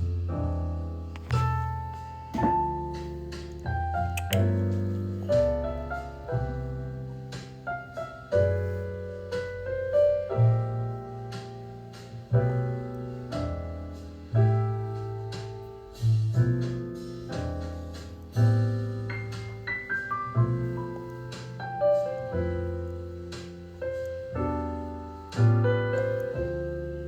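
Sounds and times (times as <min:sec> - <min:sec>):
piano chords: 0:00.0 - 0:27.0.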